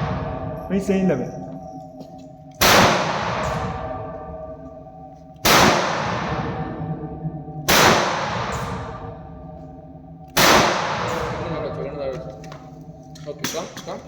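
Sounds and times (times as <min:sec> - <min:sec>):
gunshots echoing: 0:00.0 - 0:01.2, 0:02.6 - 0:04.2, 0:05.4 - 0:07.0, 0:07.6 - 0:09.3, 0:10.3 - 0:12.7.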